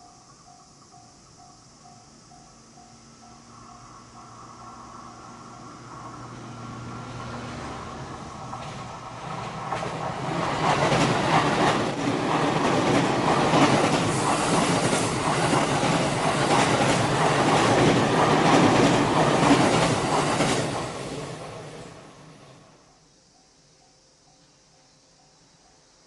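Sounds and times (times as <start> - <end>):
electric train passing: 0.0 - 23.2
wheels clacking over rail joints: 8.0 - 21.6.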